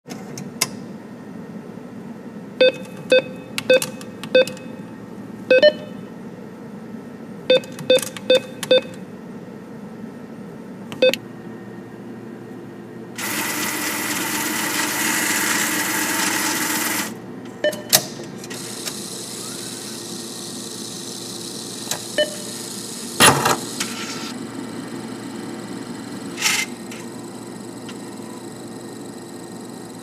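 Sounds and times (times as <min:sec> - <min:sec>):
keypad beeps: 0:02.6 - 0:04.8, 0:05.5 - 0:06.0, 0:07.5 - 0:09.0, 0:17.6 - 0:18.0, 0:22.2 - 0:22.5
cash dispenser whirring: 0:13.2 - 0:17.2, 0:18.4 - 0:30.0.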